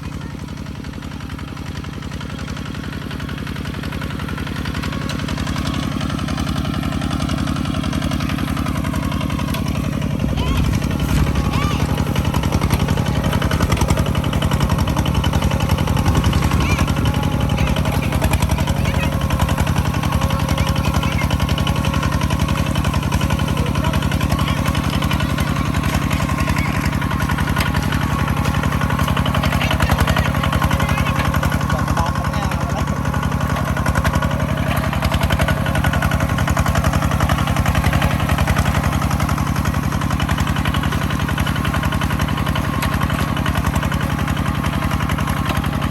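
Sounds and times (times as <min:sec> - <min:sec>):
harvester engine running: 0:00.0 - 0:45.9.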